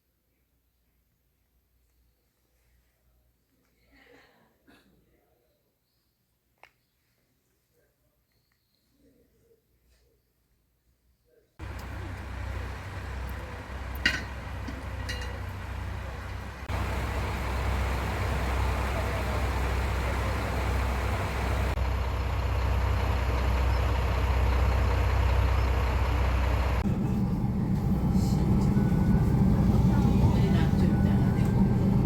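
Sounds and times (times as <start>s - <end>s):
vehicle rumble: 11.6s - 32.0s.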